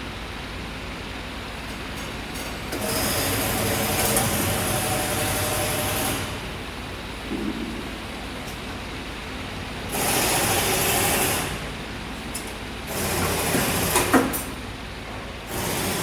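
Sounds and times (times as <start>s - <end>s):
wire-bending machine humming: 0.2s - 16.0s
machine whirring and hiss: 2.4s - 6.6s, 9.9s - 11.6s, 12.3s - 14.6s, 15.4s - 16.0s.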